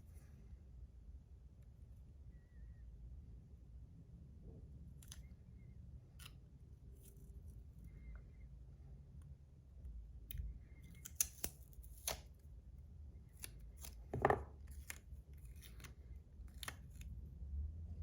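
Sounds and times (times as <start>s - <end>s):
scissors snipping tape: 10.3s - 12.4s.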